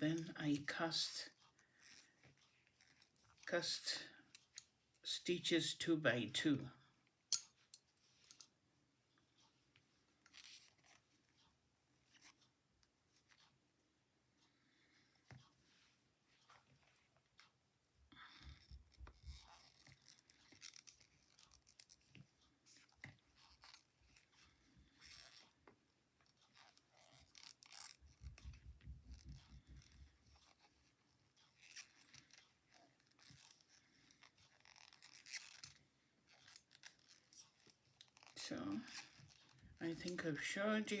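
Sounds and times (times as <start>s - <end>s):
knitting needles clicking: 7.3s - 8.5s.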